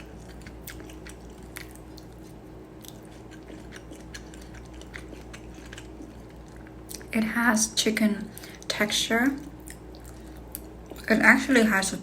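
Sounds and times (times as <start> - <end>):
person chewing: 0.0 - 7.1, 9.4 - 11.1.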